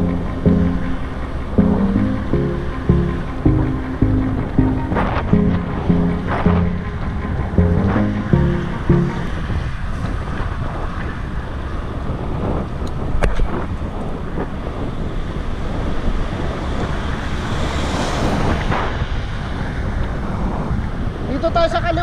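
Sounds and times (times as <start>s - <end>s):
moving vehicle rumble: 0.0s - 21.4s
wind on microphone: 9.3s - 22.0s.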